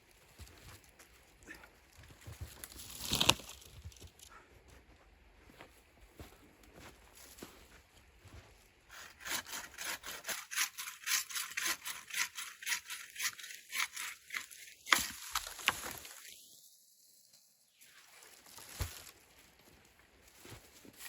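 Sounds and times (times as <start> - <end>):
hand saw cutting wood: 8.9 - 15.3.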